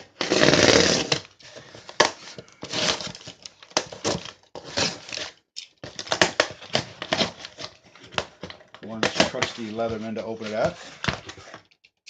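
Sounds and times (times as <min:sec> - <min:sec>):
cardboard box scraping and crinkling: 0:00.0 - 0:03.4, 0:04.1 - 0:05.3, 0:08.9 - 0:11.6.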